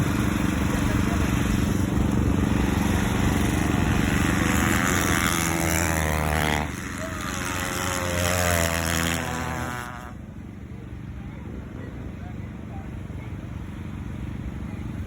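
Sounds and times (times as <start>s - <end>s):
race car engines at high revs: 0.0s - 10.5s
engine rising: 0.0s - 10.6s.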